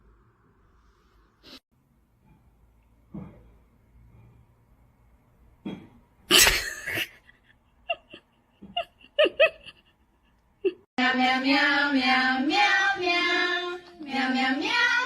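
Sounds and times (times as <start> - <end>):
harsh cough: 5.7 - 7.1.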